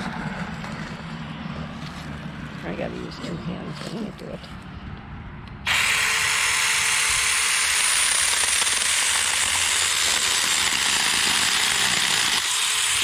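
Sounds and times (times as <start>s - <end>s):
electric chainsaw cutting branch: 5.6s - 13.0s.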